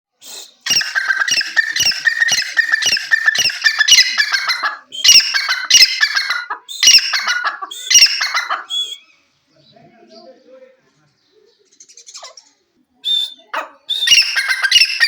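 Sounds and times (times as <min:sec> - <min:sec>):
francolin shrill calls: 0:00.3 - 0:09.2, 0:13.1 - 0:15.0.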